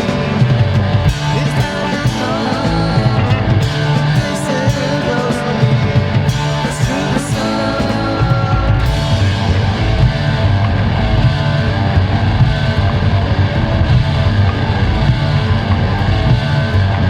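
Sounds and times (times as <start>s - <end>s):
bass guitar: 0.0s - 17.0s
distorted electric guitar: 0.0s - 17.0s
drum kit: 0.0s - 17.0s.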